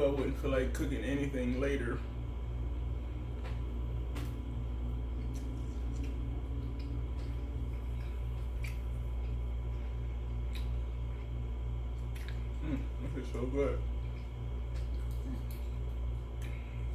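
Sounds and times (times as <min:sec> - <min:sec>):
steady low hum: 0:00.0 - 0:16.9
chewing clicks: 0:05.1 - 0:12.9, 0:13.8 - 0:16.7.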